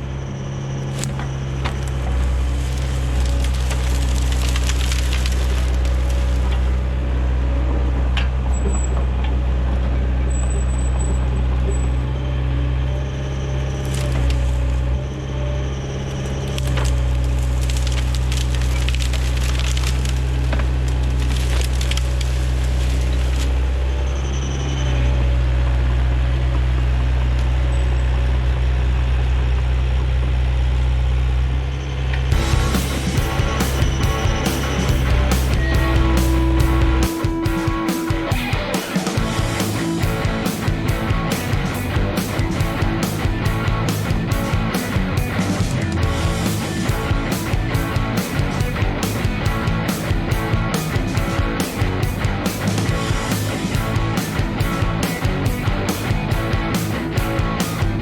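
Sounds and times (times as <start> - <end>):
excavator diesel engine: 0.0 - 58.0
brush crackling and snapping: 0.9 - 6.7, 13.8 - 14.9, 16.3 - 23.6.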